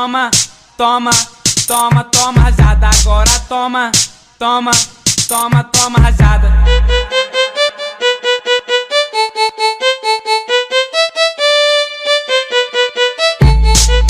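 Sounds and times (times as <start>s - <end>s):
heavy bass and drums: 1.7s - 3.5s, 5.2s - 7.1s, 13.4s - 14.0s
high quick melody: 6.3s - 14.0s.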